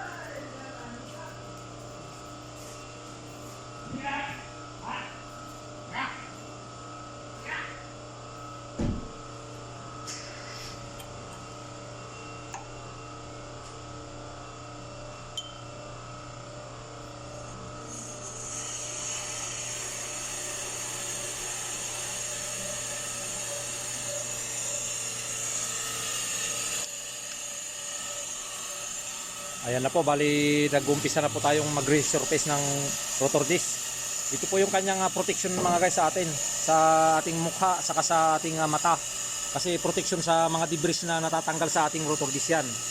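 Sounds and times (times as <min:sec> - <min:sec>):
brake lathe motor hum: 0:00.0 - 0:42.9
cutting bit hissing on rotor: 0:10.0 - 0:11.0, 0:17.8 - 0:42.9.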